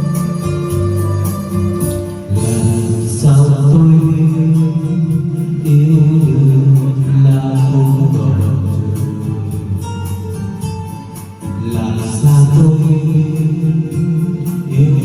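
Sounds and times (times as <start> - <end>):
love song with held melody notes: 0.0 - 15.0
steady bass line: 0.0 - 15.0.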